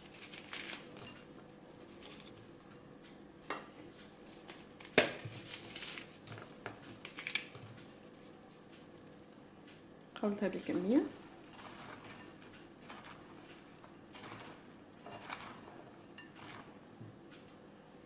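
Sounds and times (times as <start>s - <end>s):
kitchen bowls and utensils clinking: 0.3s - 2.3s, 10.2s - 16.8s.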